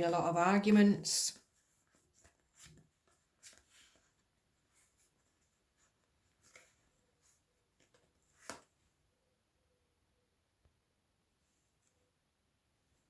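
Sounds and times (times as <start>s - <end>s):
faint rustles and taps: 1.4s - 8.8s.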